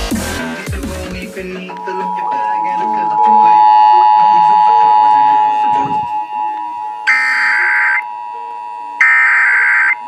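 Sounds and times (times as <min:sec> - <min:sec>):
music: 0:00.0 - 0:03.8
screeching digital data tones: 0:01.7 - 0:10.0
two-tone alert hum: 0:01.7 - 0:10.0.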